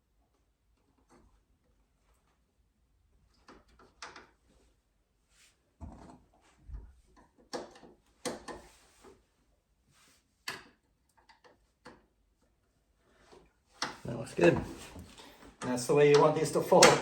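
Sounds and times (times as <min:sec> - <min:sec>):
hard parts clicking and clunking: 0:13.8 - 0:17.0.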